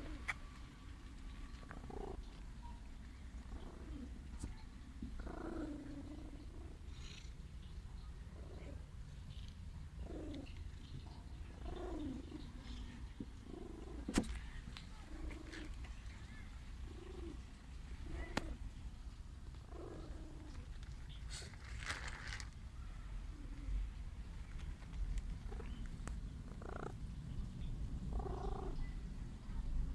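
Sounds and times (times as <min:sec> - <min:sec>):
cat purring: 0:01.3 - 0:18.9, 0:19.5 - 0:21.6, 0:26.5 - 0:27.0, 0:28.0 - 0:29.0.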